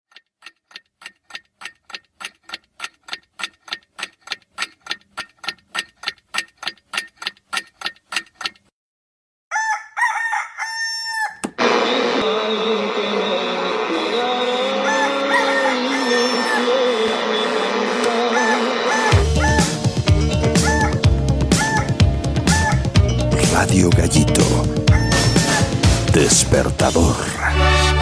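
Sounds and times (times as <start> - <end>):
clock ticking: 0.1 - 8.7
rooster crowing: 9.5 - 11.6, 14.4 - 17.4, 18.0 - 19.8, 20.4 - 23.0, 24.9 - 25.8
loud music: 11.6 - 28.0.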